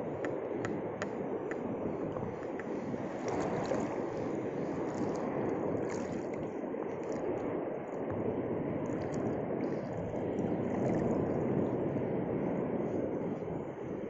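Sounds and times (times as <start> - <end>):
sea waves washing over reef: 0.0 - 14.0.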